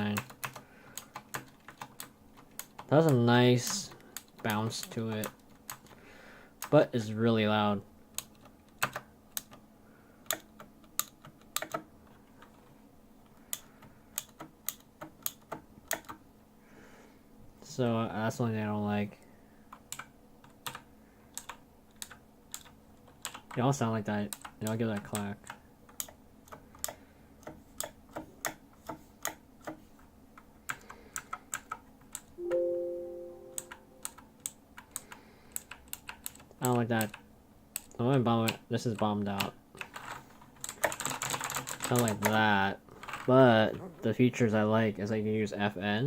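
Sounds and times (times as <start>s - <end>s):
loud mechanical keyboard clacks: 0.0s - 6.0s, 8.2s - 9.6s, 10.3s - 12.7s, 13.6s - 16.2s, 19.8s - 23.7s, 34.8s - 37.2s, 37.8s - 43.3s
chime ringing: 32.4s - 34.0s.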